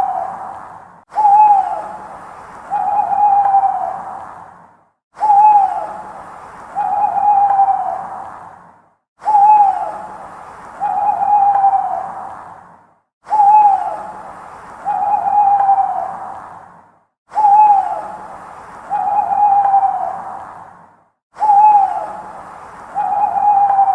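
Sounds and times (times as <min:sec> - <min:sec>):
owl hooting: 0:00.0 - 0:04.2, 0:05.2 - 0:06.1, 0:06.7 - 0:08.1, 0:09.2 - 0:10.2, 0:10.8 - 0:12.3, 0:13.3 - 0:14.2, 0:14.8 - 0:16.4, 0:17.4 - 0:20.3, 0:21.4 - 0:23.9.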